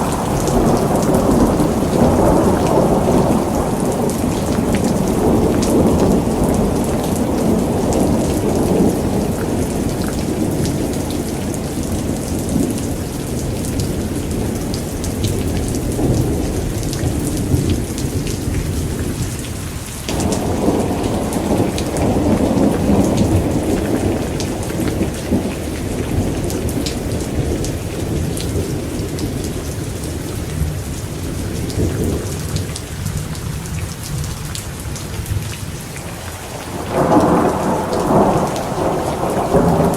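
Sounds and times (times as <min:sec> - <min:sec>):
thunder rolling: 0:00.0 - 0:19.3, 0:20.1 - 0:29.9, 0:36.2 - 0:39.9
heavy rain: 0:00.0 - 0:39.9
raindrops ticking: 0:20.1 - 0:39.9.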